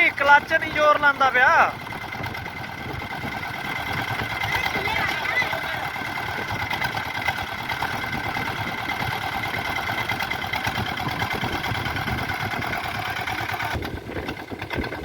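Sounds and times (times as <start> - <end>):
men talking: 0.0 - 1.8, 4.4 - 6.1
diesel tractor engine running: 0.0 - 15.0.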